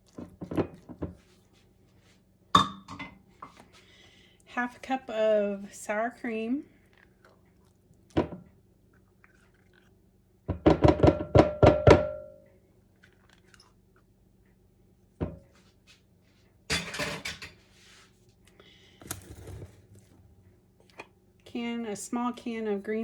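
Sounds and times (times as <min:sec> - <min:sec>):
knock: 0:10.5 - 0:12.3.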